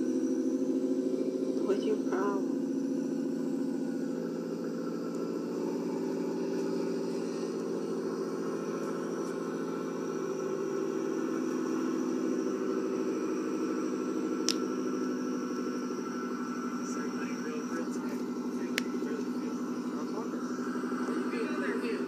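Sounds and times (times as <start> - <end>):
car engine idling: 0.0 - 22.0.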